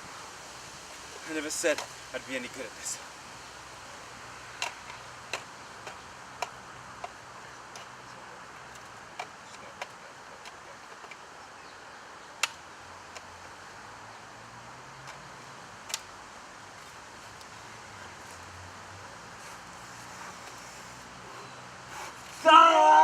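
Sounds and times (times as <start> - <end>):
steady background hiss: 0.0 - 23.0
sharp clicks: 12.4 - 13.3, 15.8 - 16.1.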